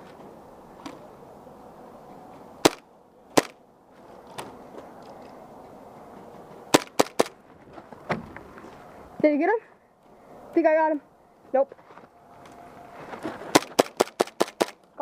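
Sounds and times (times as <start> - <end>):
airsoft gun shots: 2.6 - 2.8, 3.4 - 3.6, 6.7 - 7.3, 13.5 - 14.8.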